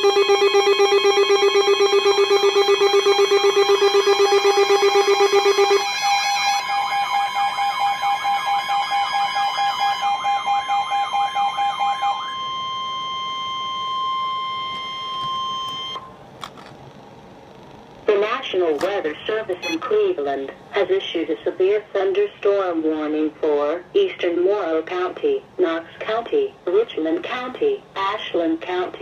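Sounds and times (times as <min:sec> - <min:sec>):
steady high-pitched tone: 0:00.0 - 0:16.1.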